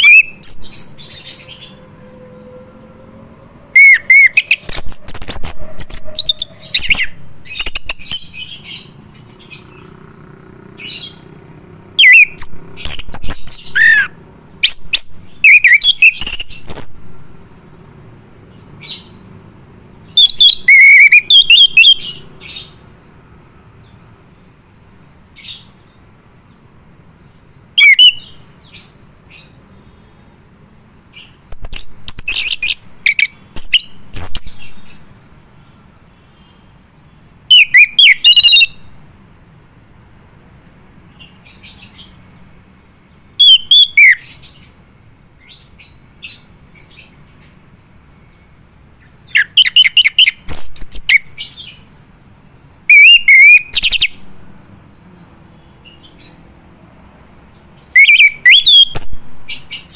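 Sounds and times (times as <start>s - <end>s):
thrush singing: 0.0s - 17.6s.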